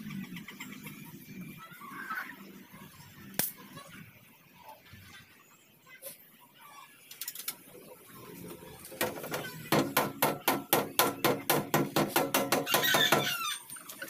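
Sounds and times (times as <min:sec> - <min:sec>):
hammer striking sheet metal: 0:09.0 - 0:13.2.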